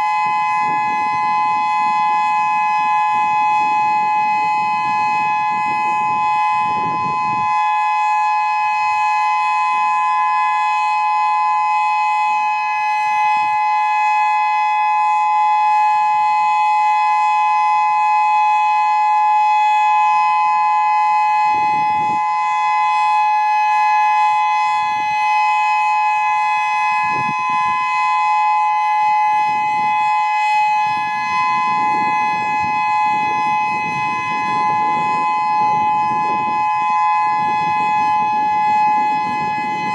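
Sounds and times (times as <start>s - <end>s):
two-pitch warning siren: 0.0s - 39.9s.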